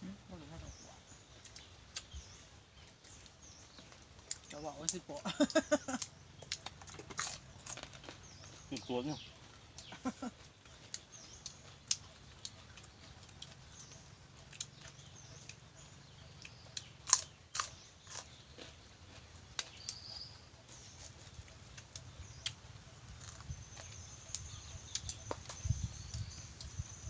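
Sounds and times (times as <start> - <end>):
chewing: 1.3 - 4.6, 5.5 - 26.8
faint bird chirps: 19.7 - 27.0.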